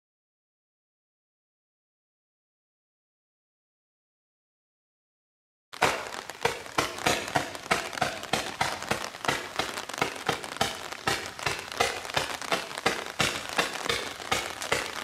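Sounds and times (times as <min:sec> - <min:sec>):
firework crackle: 0:05.8 - 0:15.0
firework shots: 0:05.8 - 0:15.0.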